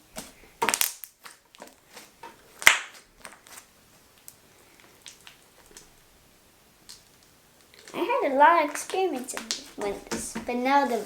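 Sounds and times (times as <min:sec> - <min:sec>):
sticky slime crackles: 0:00.0 - 0:06.1, 0:06.8 - 0:11.0
slime popping: 0:00.2 - 0:04.4, 0:08.7 - 0:10.4.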